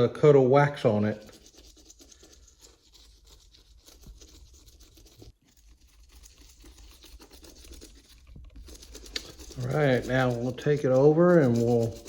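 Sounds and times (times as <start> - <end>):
faint scrubbing on glass panel: 0.8 - 12.0.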